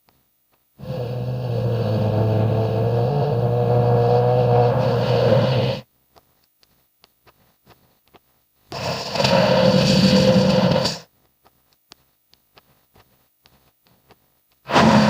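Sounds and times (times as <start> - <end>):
steady hum: 0.0 - 15.0
low monster call: 0.8 - 5.8.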